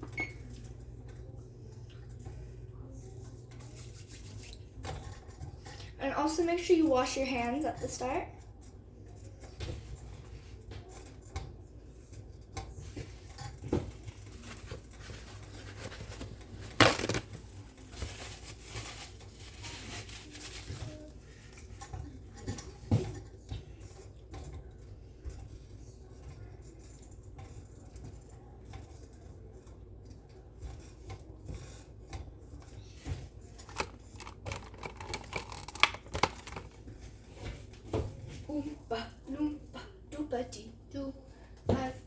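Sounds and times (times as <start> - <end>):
pots and utensils clattering: 9.3 - 17.3, 17.9 - 38.4.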